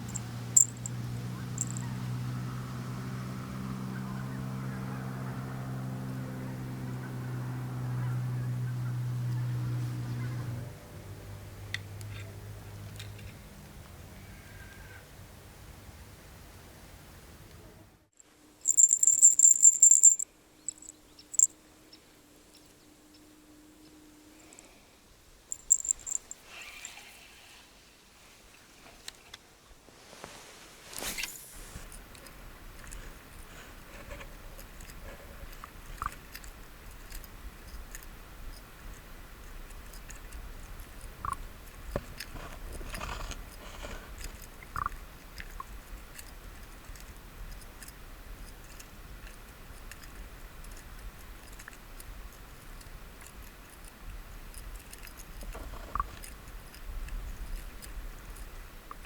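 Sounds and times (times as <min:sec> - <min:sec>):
light clicks and crackles of handling: 0:00.0 - 0:01.0, 0:01.6 - 0:01.9, 0:11.7 - 0:14.0, 0:25.5 - 0:26.8, 0:28.5 - 0:59.0
short clear clinks: 0:00.0 - 0:01.9, 0:18.6 - 0:21.5, 0:25.5 - 0:27.0
low steady hum: 0:00.0 - 0:04.3.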